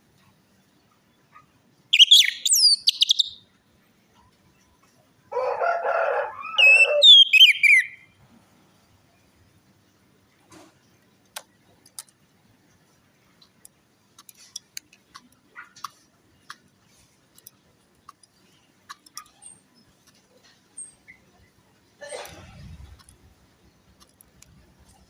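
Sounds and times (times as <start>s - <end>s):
sharp ticks and clicks: 13.4s - 20.3s, 23.9s - 25.0s.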